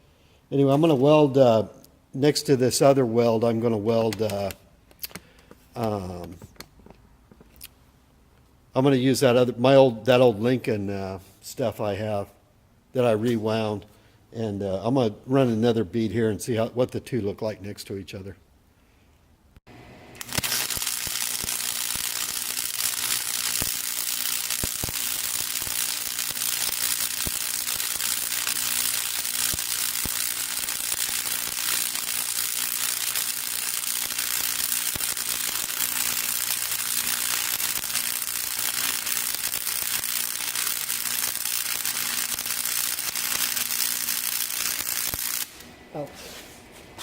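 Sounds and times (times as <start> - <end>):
welding arc crackling: 20.1 - 45.8.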